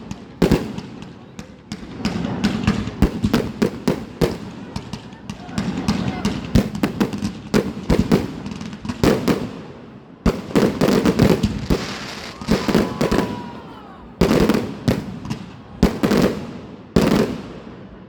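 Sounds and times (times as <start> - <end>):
fireworks bursting: 0.0 - 18.0
firework whistle: 10.6 - 14.6.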